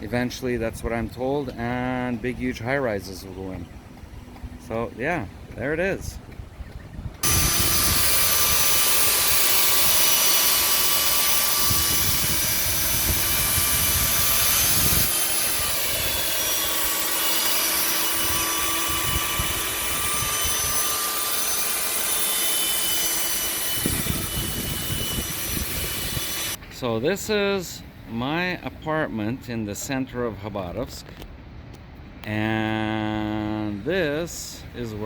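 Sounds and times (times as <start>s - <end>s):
construction machinery hum: 0.0s - 30.4s
wind buffeting microphone: 3.7s - 8.8s, 11.6s - 16.4s, 23.8s - 26.4s.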